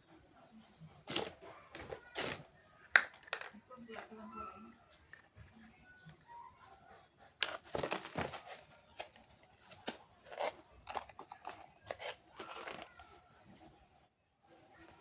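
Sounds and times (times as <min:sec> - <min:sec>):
packaging crinkling and tearing: 0:01.1 - 0:03.5, 0:09.7 - 0:13.0.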